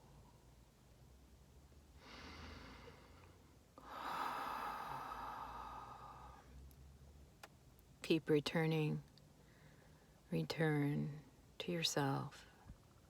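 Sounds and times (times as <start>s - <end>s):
person breathing: 2.0s - 6.6s, 9.4s - 10.2s.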